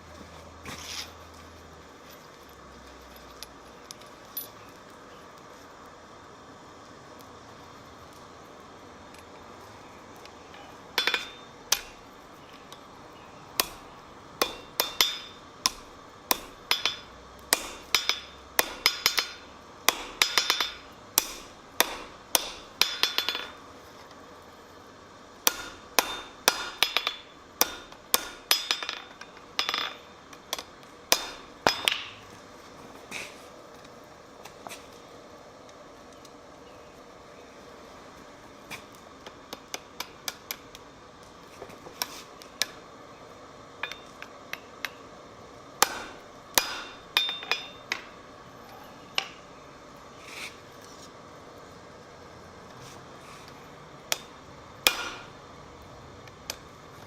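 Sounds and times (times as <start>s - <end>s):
hammer striking an anvil: 14.4s - 23.5s, 25.5s - 30.0s, 31.1s - 32.1s, 45.8s - 48.0s, 54.9s - 55.3s.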